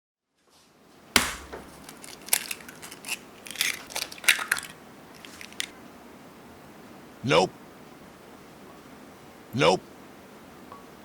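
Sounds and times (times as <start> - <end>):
sharp knock: 1.2 - 1.8
crackling clicks: 1.7 - 5.7.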